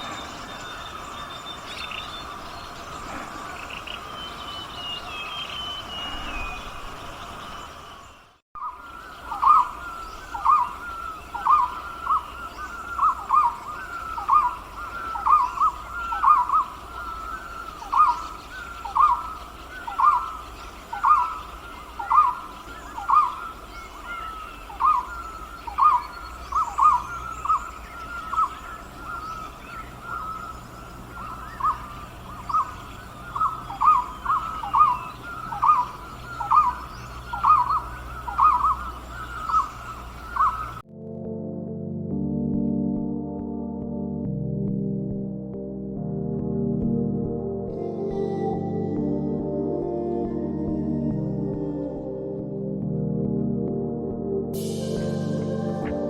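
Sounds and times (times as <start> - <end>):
faint birds chirping: 0.0 - 40.8.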